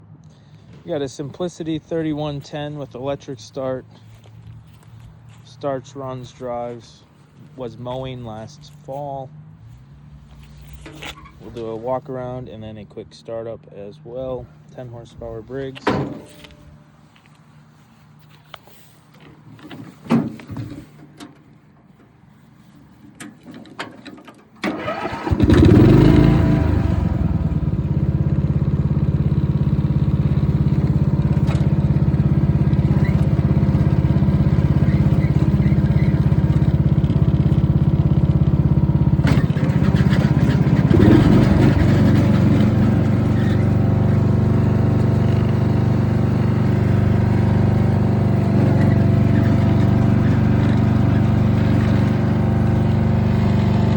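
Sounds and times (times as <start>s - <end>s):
electric starter cranking: 24.5s - 45.6s
mower engine running: 24.6s - 53.9s.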